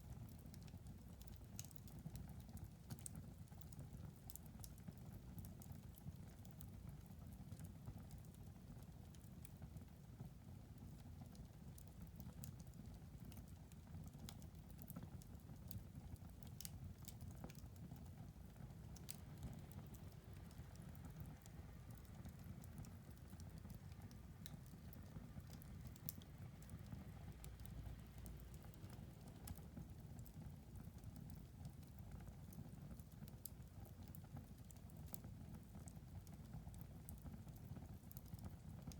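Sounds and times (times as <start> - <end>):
wood fire crackling: 0.0 - 38.9.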